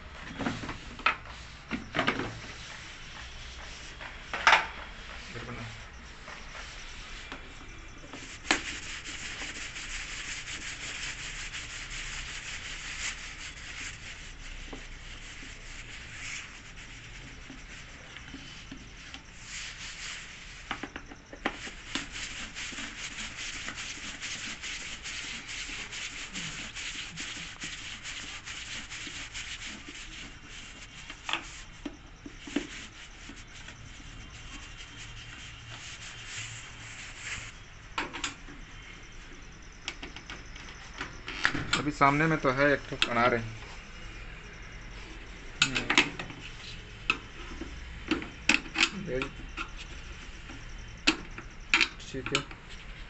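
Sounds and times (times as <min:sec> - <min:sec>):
continuous scraping and rubbing: 0:00.0 - 0:53.0.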